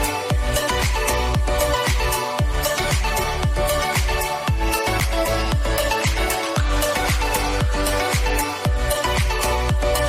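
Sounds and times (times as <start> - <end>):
electronic music with steady beat: 0.0 - 10.0.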